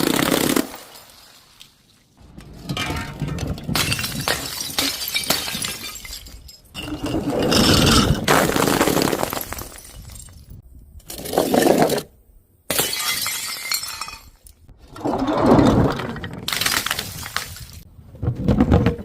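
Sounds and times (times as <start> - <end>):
glass bottles shattering: 2.6 - 10.6, 12.7 - 14.4.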